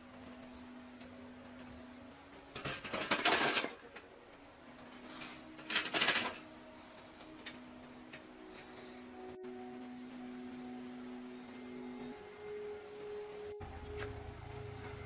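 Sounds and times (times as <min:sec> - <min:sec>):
faint steady hum: 0:00.0 - 0:15.0
metallic clicking and rattling: 0:02.5 - 0:04.1, 0:04.8 - 0:06.5.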